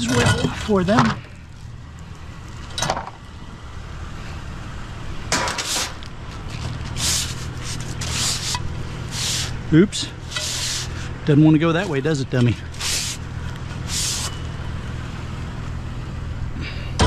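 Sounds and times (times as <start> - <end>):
vehicle engine idling: 0.0 - 17.0
scrap pieces scraping and rustling: 5.4 - 9.6, 10.2 - 11.2, 12.7 - 14.5.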